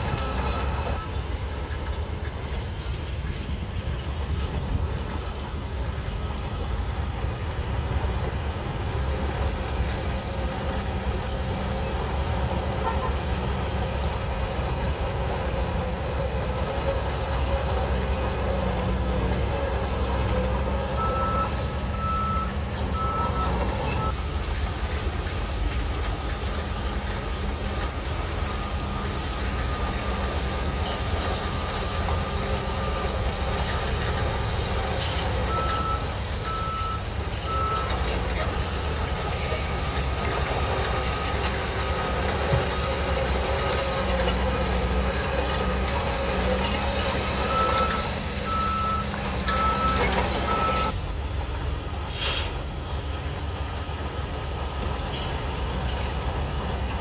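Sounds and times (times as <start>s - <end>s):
reversing alarm beeps: 0.0s - 1.1s, 21.0s - 24.2s, 35.5s - 39.0s, 47.4s - 51.0s
bulldozer diesel engine running: 0.0s - 57.0s.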